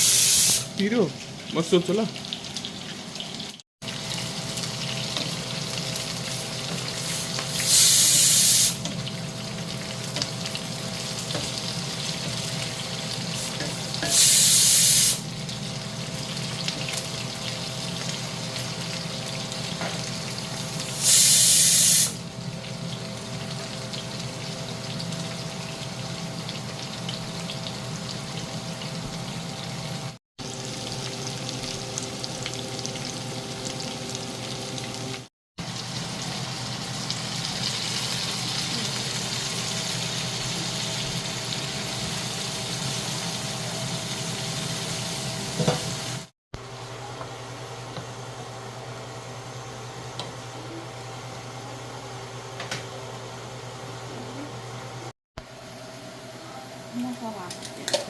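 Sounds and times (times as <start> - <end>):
loud hissing bursts: 0.0 - 0.7, 7.6 - 8.8, 14.1 - 15.2, 21.0 - 22.2.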